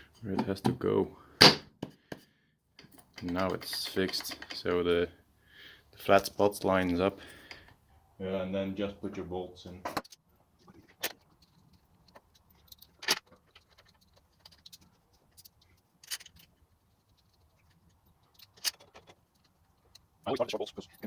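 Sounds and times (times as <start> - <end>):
metal bolts clinking: 2.8 - 4.8, 10.8 - 21.0.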